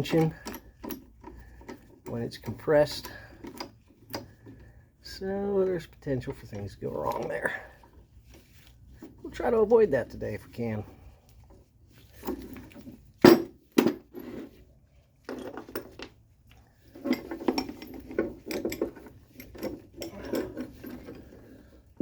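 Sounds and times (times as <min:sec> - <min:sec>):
metal clamps clinking: 0:00.0 - 0:04.4, 0:16.8 - 0:21.6.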